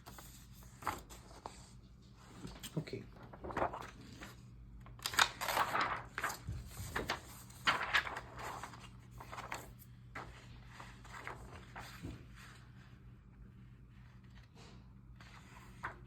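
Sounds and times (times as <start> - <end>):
paper and plastic rustling: 0.1 - 12.8.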